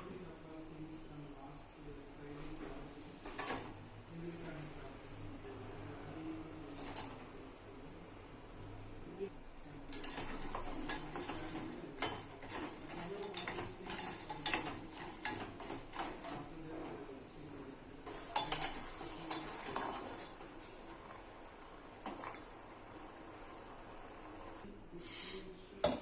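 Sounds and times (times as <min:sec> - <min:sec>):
spoon stirring and scraping in pot: 0:09.9 - 0:17.0, 0:18.1 - 0:23.0.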